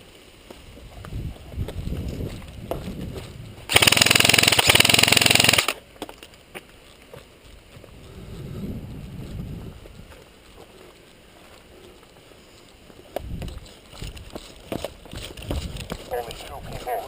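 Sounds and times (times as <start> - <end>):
rustling and scuffing movement: 0.1 - 3.7, 5.9 - 17.0
airsoft gun full-auto burst: 3.7 - 5.8.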